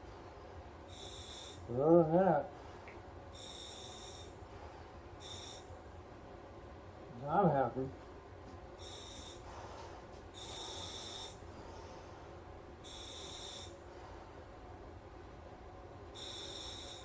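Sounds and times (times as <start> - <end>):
regulator air hiss on inhalation: 0.9 - 1.7, 3.3 - 5.7, 8.8 - 12.0, 12.8 - 13.8, 16.1 - 17.0.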